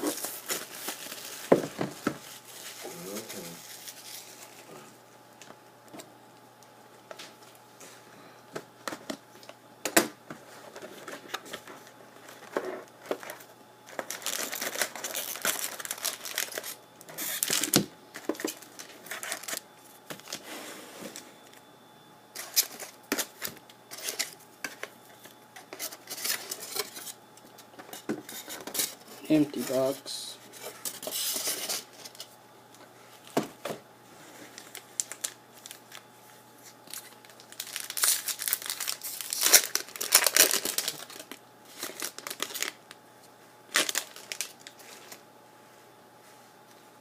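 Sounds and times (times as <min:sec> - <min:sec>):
wrappers tearing and crinkling: 0:00.0 - 0:01.6, 0:02.2 - 0:04.7, 0:13.1 - 0:19.6, 0:34.6 - 0:43.0, 0:43.7 - 0:45.2.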